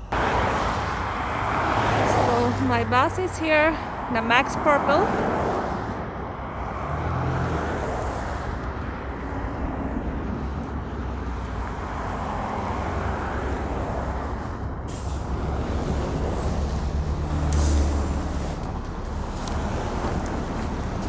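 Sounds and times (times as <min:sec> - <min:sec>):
bus engine rumbling: 0:00.0 - 0:21.0
air hiss: 0:14.9 - 0:21.0.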